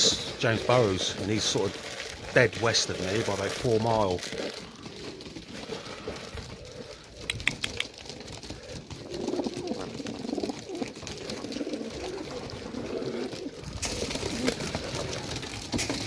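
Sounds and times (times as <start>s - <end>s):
pigeons cooing: 0.0s - 16.0s
quick clicks: 7.2s - 7.9s.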